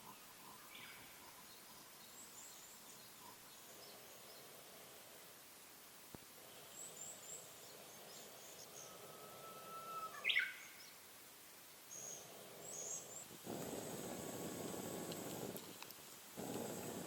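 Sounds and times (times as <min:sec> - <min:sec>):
faint background hiss: 0:00.0 - 0:17.0
birds chirping: 0:06.4 - 0:11.1, 0:11.9 - 0:17.0.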